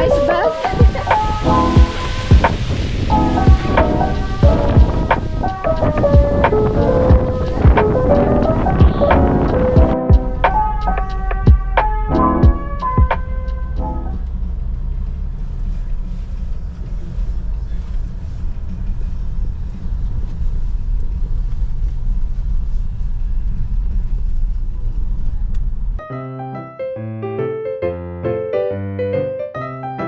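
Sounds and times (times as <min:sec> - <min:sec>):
piano music: 0:00.0 - 0:14.3, 0:26.0 - 0:30.0
steady low rumble: 0:00.0 - 0:26.0.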